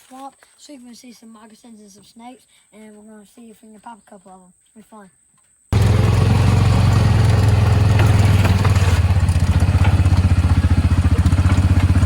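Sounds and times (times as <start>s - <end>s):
small vehicle engine running: 5.8s - 12.0s
light clatter: 6.8s - 12.0s.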